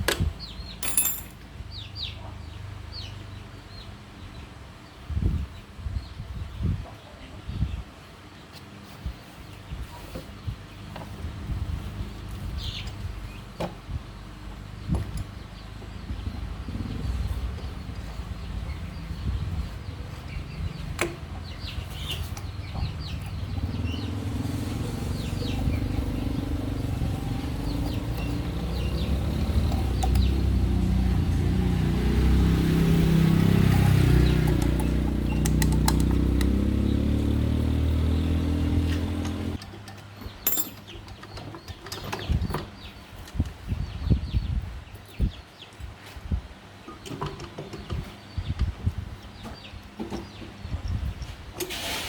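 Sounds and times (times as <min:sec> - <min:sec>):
birds chirping: 0:00.0 - 0:39.6, 0:40.2 - 0:51.5
motorcycle engine running: 0:15.9 - 0:39.6.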